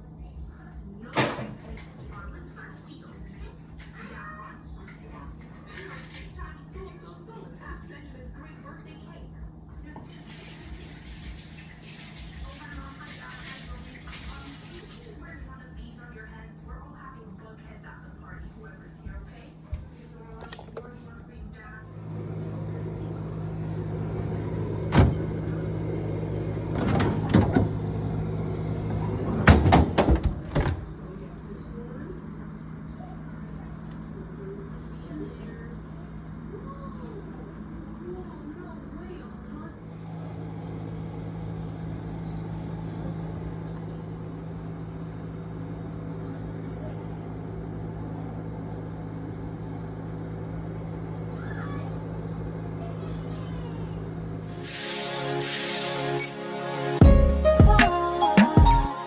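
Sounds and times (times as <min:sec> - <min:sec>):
engine humming steadily: 0:20.9 - 0:37.5, 0:38.4 - 0:54.6
low engine hum: 0:21.6 - 0:37.2.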